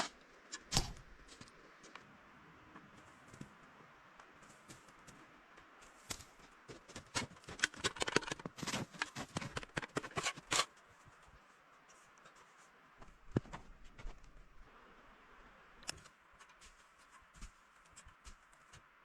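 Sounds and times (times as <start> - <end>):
small clicks and rustles: 4.2 - 14.5, 15.8 - 19.0.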